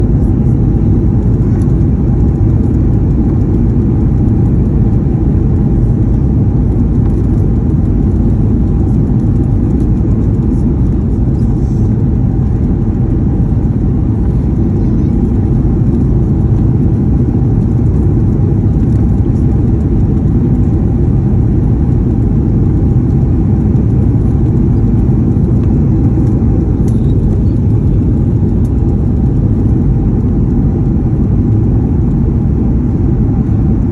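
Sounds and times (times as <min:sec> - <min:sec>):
aircraft engines and airflow rumble: 0:00.0 - 0:33.9
faint steady hum: 0:00.0 - 0:33.9.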